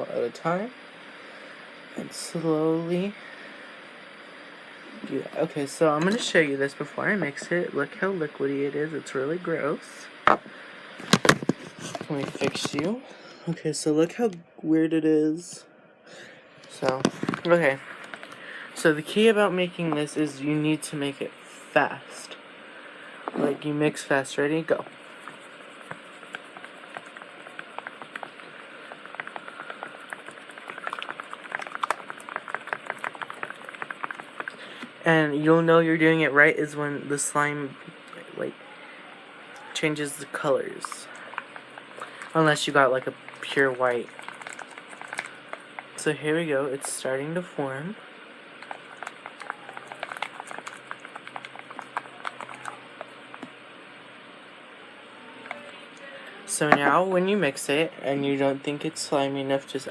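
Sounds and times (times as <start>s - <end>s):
stick stirring wet soap and salt: 5.1s - 6.8s, 24.0s - 35.0s, 39.7s - 47.4s, 48.6s - 53.6s.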